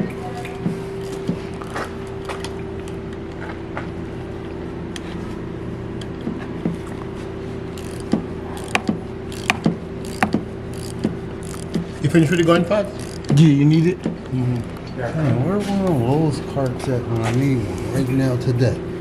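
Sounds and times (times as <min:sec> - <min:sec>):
steady mechanical hum: 0:00.0 - 0:19.0
hand tools clicking and clanking: 0:00.4 - 0:03.0, 0:07.7 - 0:11.8, 0:12.9 - 0:14.9.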